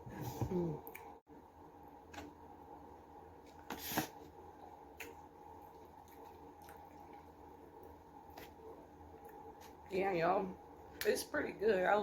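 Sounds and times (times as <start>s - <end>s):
person chewing food: 4.6s - 9.8s.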